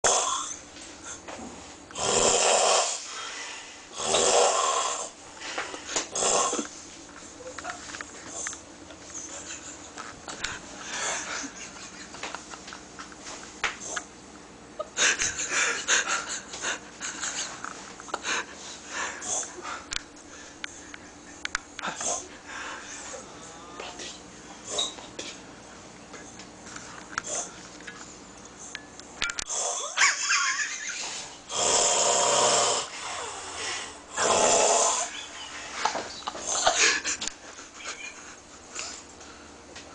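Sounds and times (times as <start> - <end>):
person snoring heavily: 0.0 - 0.6, 2.0 - 5.2, 6.0 - 6.6, 31.5 - 35.2.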